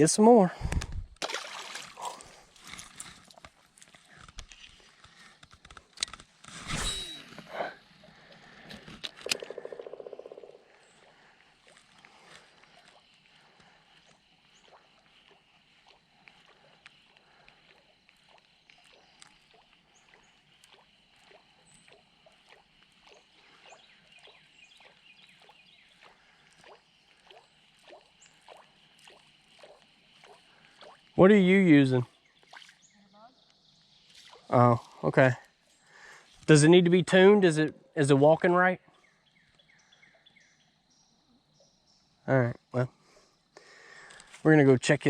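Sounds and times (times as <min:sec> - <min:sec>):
pond background: 0:00.0 - 0:45.0
fishing rod cast whoosh: 0:06.5 - 0:07.6
small soft ticks: 0:11.6 - 0:31.2.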